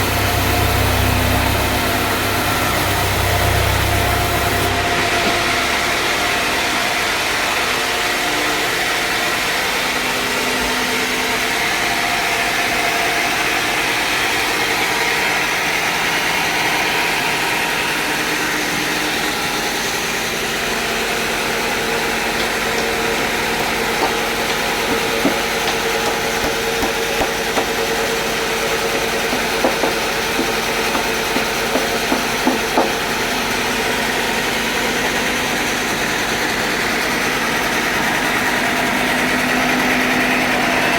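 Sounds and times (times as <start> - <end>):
sawmill machinery humming: 0.0 - 40.9
short sharp knocks: 22.4 - 27.8, 28.9 - 33.0.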